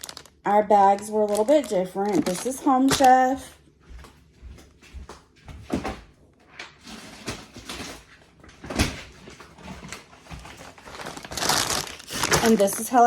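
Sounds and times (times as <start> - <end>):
bags rustling: 0.0 - 3.5, 6.8 - 13.0
bags knocking down: 10.4 - 12.8.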